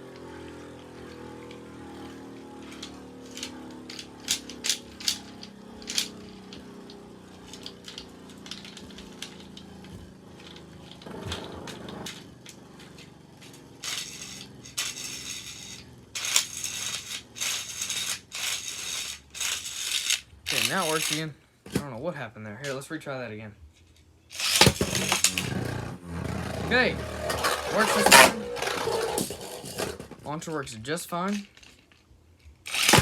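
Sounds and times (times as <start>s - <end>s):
whirring ratcheting rattles: 0.4s - 21.3s, 24.3s - 30.3s, 31.3s - 33.0s
plastic launcher clicks: 13.8s - 21.9s, 24.3s - 25.6s, 27.0s - 30.3s, 32.7s - 33.0s.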